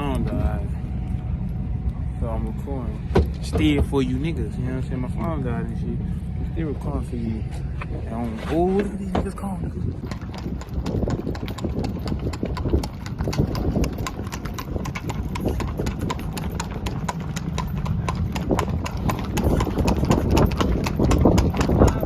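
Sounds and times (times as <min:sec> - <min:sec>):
horse hooves clip-clopping: 0:07.5 - 0:22.0.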